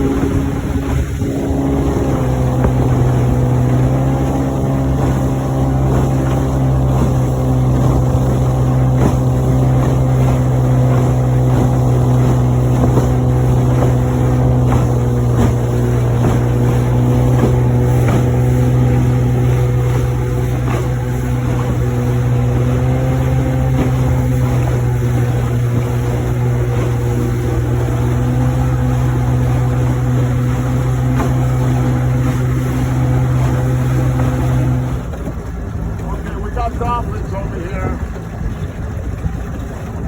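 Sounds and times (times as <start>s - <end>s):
outboard motor running: 0.0s - 40.0s.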